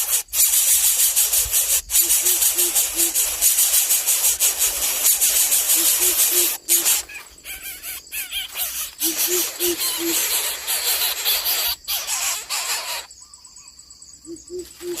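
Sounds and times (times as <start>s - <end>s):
loud hiss: 0.0s - 7.2s
birds chirping: 0.5s - 15.0s
bird deep hollow hooting: 1.9s - 3.4s, 4.4s - 11.8s, 14.2s - 15.0s.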